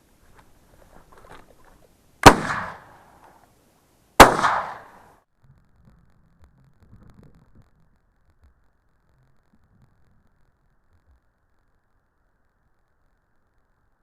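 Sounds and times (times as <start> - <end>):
shotgun shots: 2.2 - 3.2, 4.2 - 5.1.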